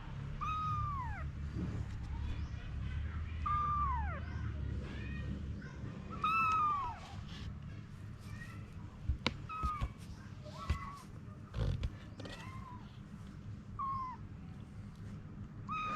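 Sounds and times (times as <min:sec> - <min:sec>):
cat meowing: 0:00.4 - 0:01.3, 0:15.7 - 0:15.9.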